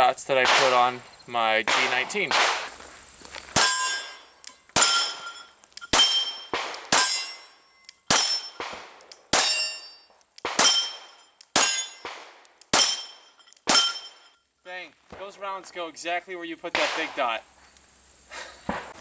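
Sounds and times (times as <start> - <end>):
pistol shots: 0.3 - 1.0, 1.6 - 2.7, 3.6 - 14.2, 16.7 - 17.3
metallic target clang: 3.6 - 14.4.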